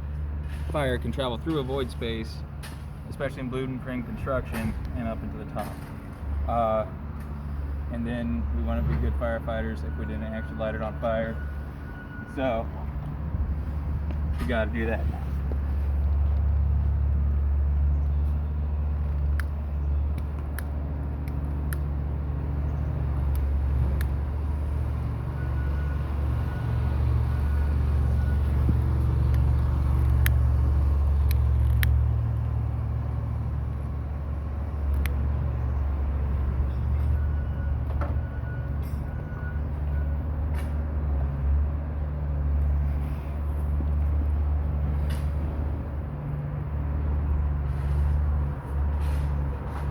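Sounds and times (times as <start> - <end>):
low engine rumble: 0.0 - 49.9
sharp clicks and taps: 19.1 - 21.9.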